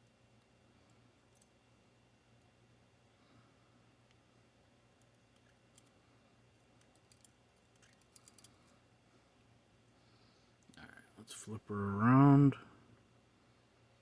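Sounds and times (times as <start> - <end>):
metal lock parts clicking: 6.8 - 8.5.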